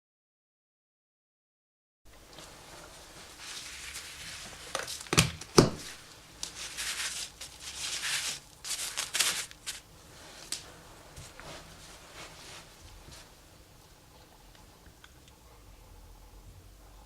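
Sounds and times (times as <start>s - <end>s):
rustling or scraping: 2.2s - 5.1s, 5.8s - 13.4s.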